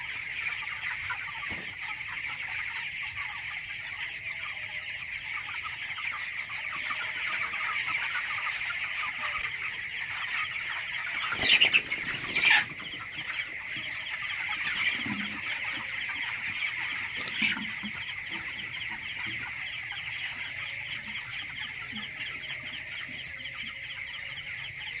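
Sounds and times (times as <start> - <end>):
chickens clucking: 0.0 - 25.0
chickens peeping: 0.0 - 25.0.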